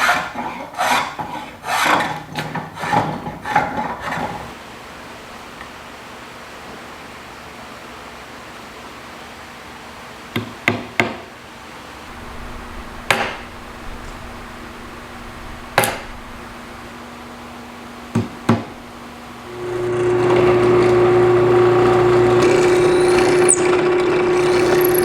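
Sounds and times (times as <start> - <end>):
steady background hiss: 11.8 - 19.5
low steady hum: 12.1 - 20.0
tool knocking on wood: 18.1 - 18.7.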